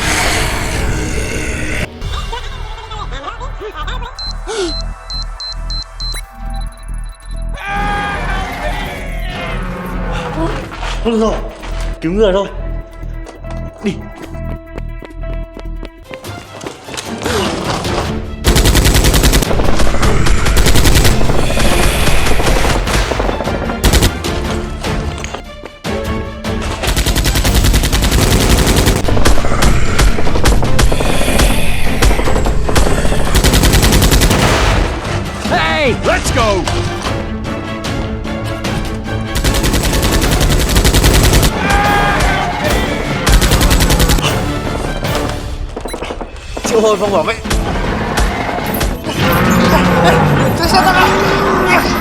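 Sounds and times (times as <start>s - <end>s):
background music: 0.0s - 52.0s
rapid automatic gunfire: 18.4s - 24.2s, 26.9s - 34.7s, 39.4s - 41.6s, 43.3s - 44.2s.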